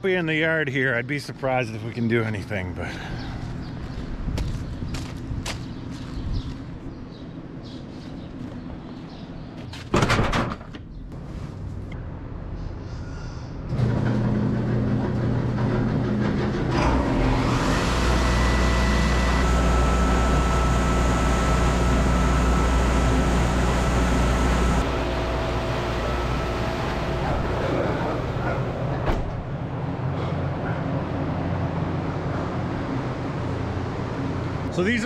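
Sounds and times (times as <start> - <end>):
vehicle engine starting and running: 13.7 - 34.7
vehicle door shutting: 28.9 - 29.5.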